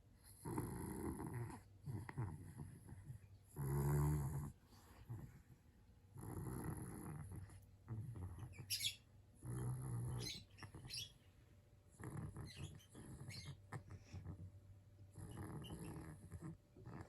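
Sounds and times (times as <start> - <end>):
dog snoring: 0.2 - 5.4, 6.2 - 8.5, 9.4 - 11.0, 11.9 - 14.5, 15.1 - 17.0.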